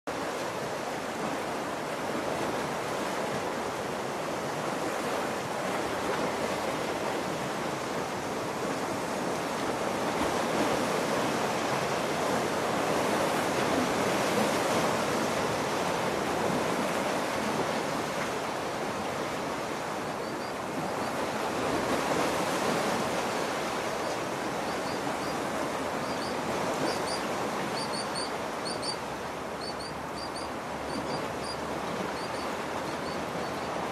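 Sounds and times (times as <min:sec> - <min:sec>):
waves breaking on shore: 0:00.1 - 0:33.9
faint high chirps: 0:27.8 - 0:29.0, 0:29.6 - 0:31.6.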